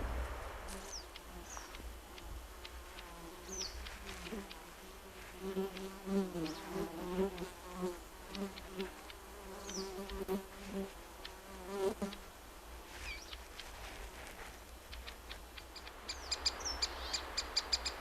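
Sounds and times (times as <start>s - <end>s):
flying insect buzzing: 0.7s - 16.7s
high falling bird chirp: 15.6s - 18.0s.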